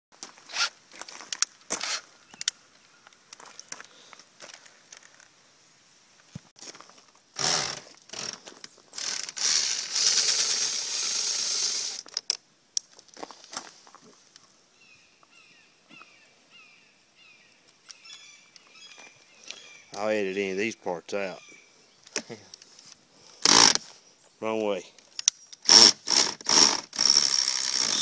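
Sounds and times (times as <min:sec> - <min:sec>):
power drill-driver bursts: 0:01.8 - 0:02.0, 0:07.4 - 0:08.4, 0:09.0 - 0:12.0, 0:23.4 - 0:23.8, 0:25.6 - 0:28.0
bird chirping: 0:01.8 - 0:04.1, 0:14.7 - 0:22.8.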